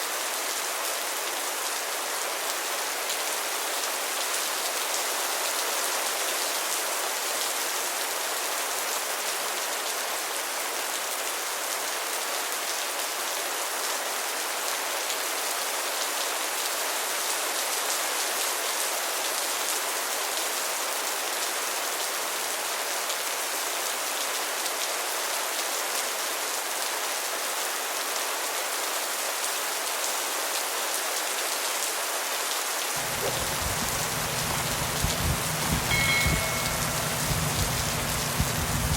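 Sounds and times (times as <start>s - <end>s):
steady rain falling: 0.0s - 38.9s
low rumble: 33.0s - 38.9s.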